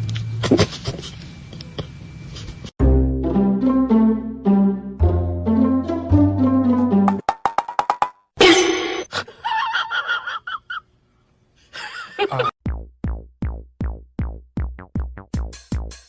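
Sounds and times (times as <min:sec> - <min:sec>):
music with thumping beat: 0:06.8 - 0:08.2, 0:12.6 - 0:16.0.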